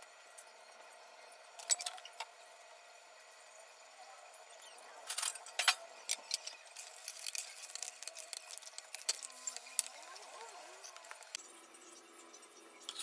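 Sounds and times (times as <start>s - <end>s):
utensils clinking against dishes: 1.6s - 2.2s, 5.0s - 11.4s, 12.7s - 13.0s.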